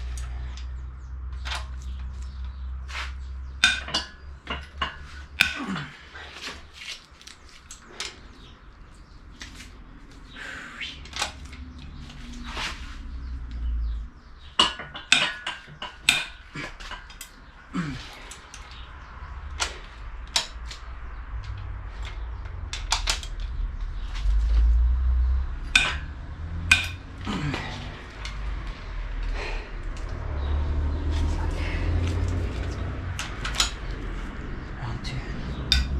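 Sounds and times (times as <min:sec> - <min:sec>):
sharp metallic knocks: 0:03.6 - 0:05.9, 0:14.4 - 0:17.3, 0:25.6 - 0:27.2, 0:35.6 - 0:35.9
metal tools clinking: 0:32.2 - 0:34.0.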